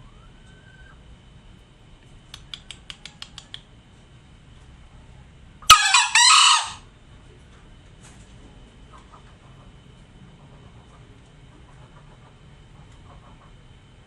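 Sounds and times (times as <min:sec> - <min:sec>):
faint clicks: 0:02.3 - 0:03.7
junglefowl crowing: 0:05.7 - 0:06.9.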